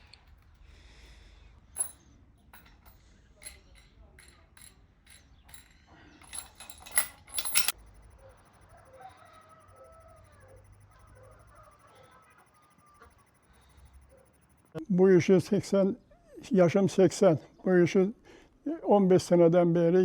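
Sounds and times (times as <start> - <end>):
clicks and rustling from broom handwork: 2.6 - 7.8.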